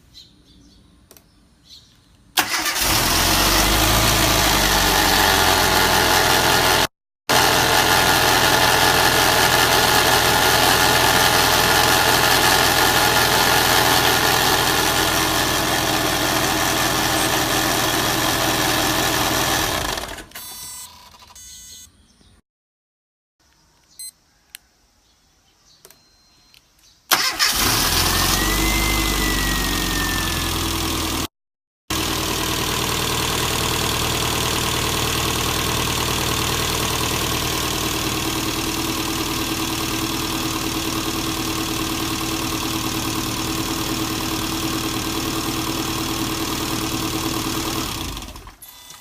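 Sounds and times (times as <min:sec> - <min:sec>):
car engine starting and idling: 0:02.3 - 0:20.5, 0:27.1 - 0:31.3, 0:31.9 - 0:48.6.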